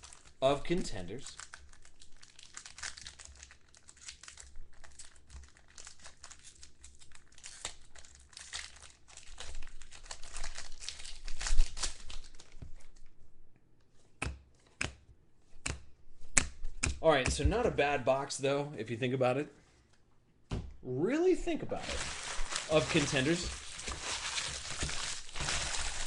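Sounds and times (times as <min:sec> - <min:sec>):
foil wrapper tearing and crinkling: 0:00.0 - 0:13.0, 0:21.8 - 0:26.0.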